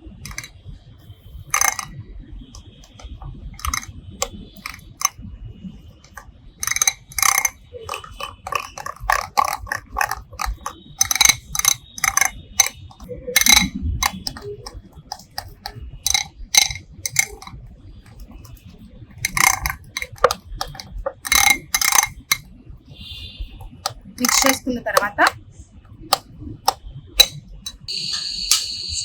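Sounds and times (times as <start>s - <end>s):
spoon scraping and clinking in bowl: 0.3s - 0.5s, 1.5s - 1.9s, 2.8s - 3.9s, 4.6s - 5.1s, 6.1s - 18.6s, 19.2s - 22.5s, 24.2s - 25.4s.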